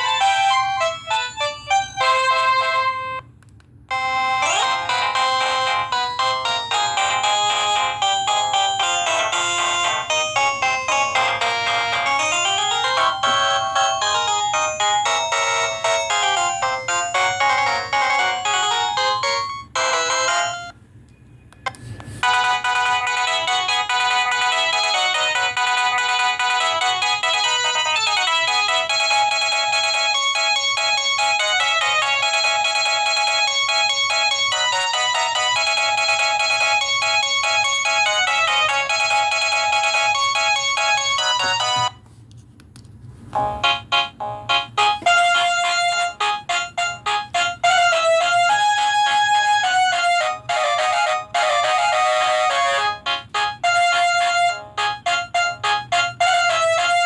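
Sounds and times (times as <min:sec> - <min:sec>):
electronic ringtone melody: 0:00.0 - 0:03.2, 0:03.9 - 0:20.8, 0:22.2 - 0:42.0, 0:43.4 - 0:57.0
ringtone with chord-like notes: 0:00.0 - 0:03.3, 0:03.9 - 0:20.8, 0:22.2 - 0:42.0, 0:43.3 - 0:57.0
click: 0:03.4 - 0:03.8.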